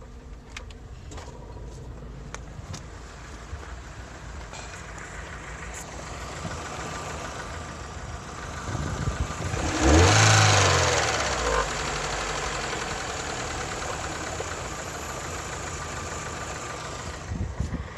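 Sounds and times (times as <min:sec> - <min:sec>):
car engine idling with knock: 0:00.1 - 0:17.9
car engine revving: 0:05.3 - 0:17.4.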